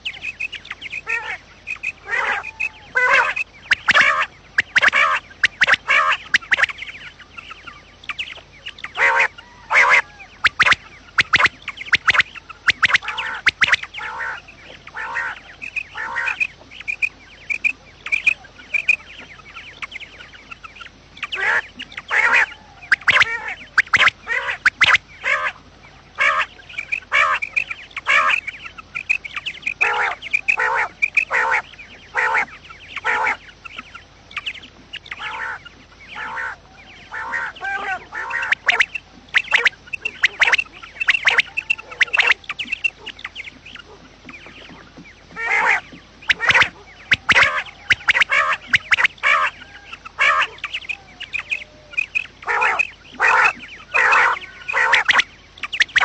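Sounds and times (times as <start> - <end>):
quail calling: 0.0 - 56.0
thin bird notes: 0.0 - 56.0.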